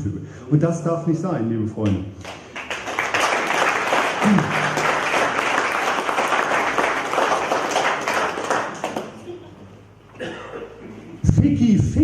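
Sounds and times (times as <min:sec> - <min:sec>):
audience applauding: 0:02.2 - 0:09.4.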